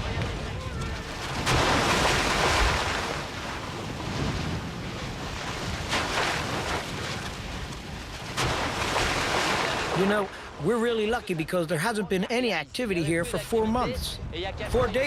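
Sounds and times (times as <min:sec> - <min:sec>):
lava churning and spattering: 0:00.3 - 0:10.5.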